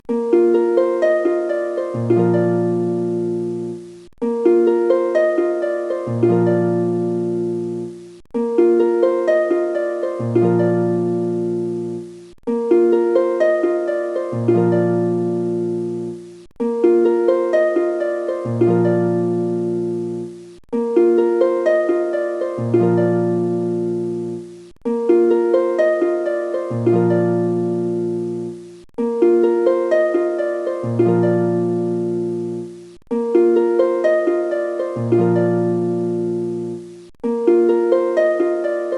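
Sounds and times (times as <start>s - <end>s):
plucked harp-like melody: 0.0s - 38.9s.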